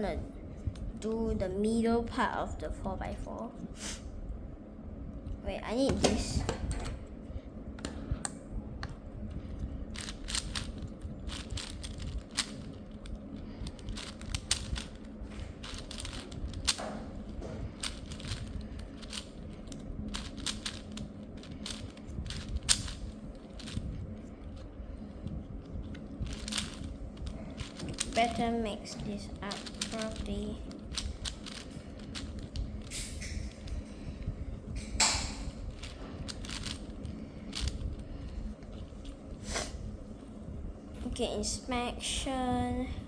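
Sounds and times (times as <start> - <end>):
low steady hum: 0.0 - 43.0
puzzle cube layers clicking: 10.0 - 15.0, 15.6 - 23.9, 25.9 - 33.1, 35.0 - 37.8.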